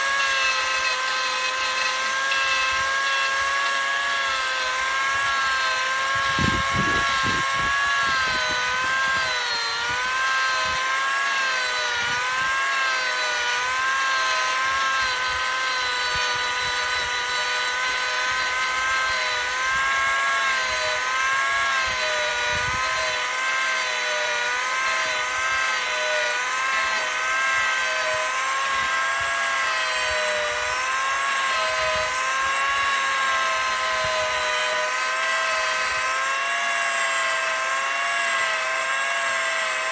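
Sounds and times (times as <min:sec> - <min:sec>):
angle grinder cutting wood: 0:00.0 - 0:39.9.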